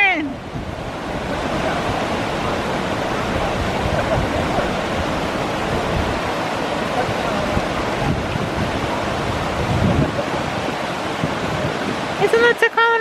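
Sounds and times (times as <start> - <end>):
wind buffeting microphone: 0.0 - 12.6
fast river water rushing: 0.0 - 13.0.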